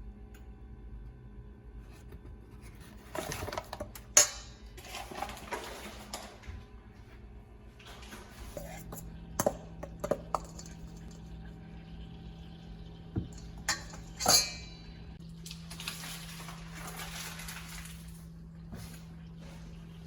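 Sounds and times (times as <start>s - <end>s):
steady low hum: 0.0s - 20.0s
kitchenware clinking: 3.2s - 6.3s, 8.5s - 11.1s, 13.2s - 15.1s.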